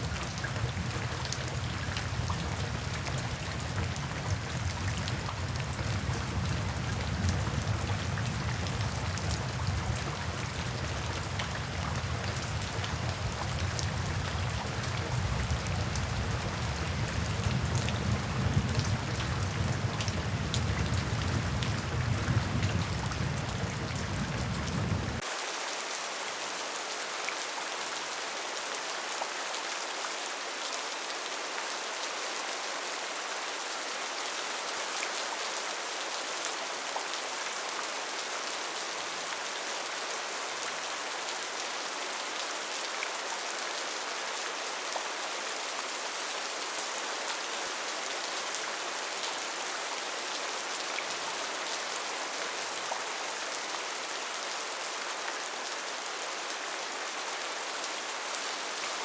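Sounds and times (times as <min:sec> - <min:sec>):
rain drumming on a tin roof: 0:00.0 - 0:25.6.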